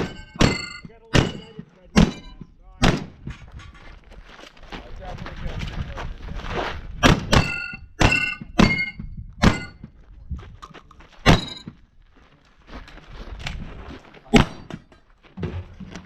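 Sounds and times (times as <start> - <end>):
metallic ringing of steel targets: 0.0 - 2.5, 7.3 - 9.8, 11.2 - 11.7
shotgun shots: 0.0 - 3.3, 7.0 - 9.8, 11.2 - 11.6, 14.3 - 14.8.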